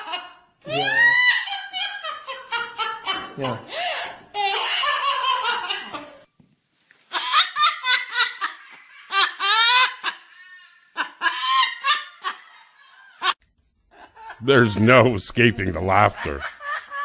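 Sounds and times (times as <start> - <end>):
parakeet mimicking laughter: 9.4 - 12.3.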